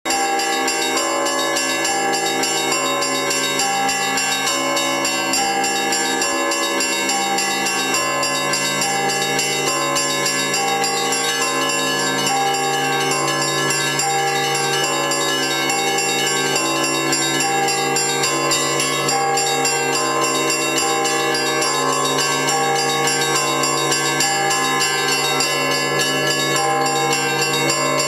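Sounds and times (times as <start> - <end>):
hum of larger bells: 0.1 - 28.0.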